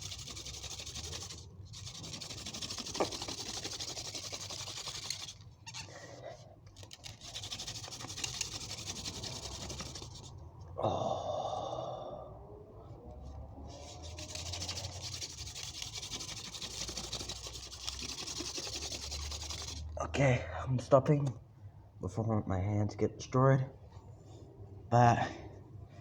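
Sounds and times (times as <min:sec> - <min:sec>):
wooden spindle rubbing in notch: 0:00.0 - 0:05.9, 0:06.8 - 0:10.4, 0:13.8 - 0:19.9.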